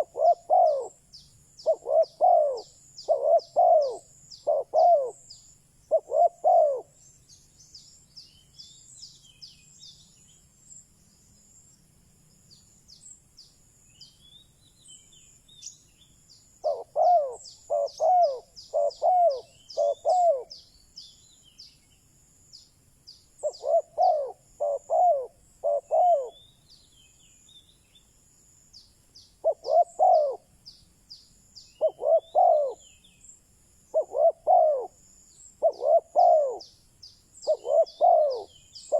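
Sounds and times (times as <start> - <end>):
dove cooing: 0.0 - 1.0, 1.6 - 5.3, 5.9 - 7.0, 16.6 - 20.5, 23.4 - 26.4, 29.4 - 30.5, 31.8 - 32.8, 33.9 - 35.0, 35.6 - 36.7, 37.4 - 38.9
small birds chirping: 0.0 - 38.9.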